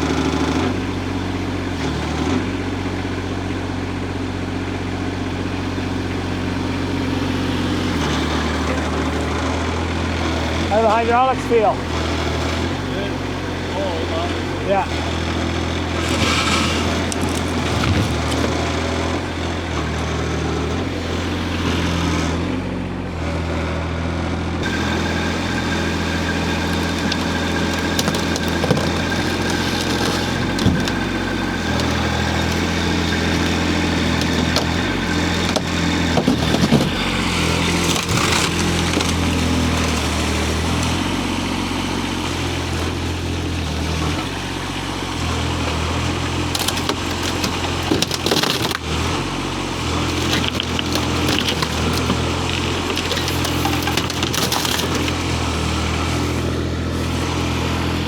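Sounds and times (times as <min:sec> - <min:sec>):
excavator engine running: 0:00.0 - 0:58.0
scattered knocks: 0:26.6 - 0:39.8.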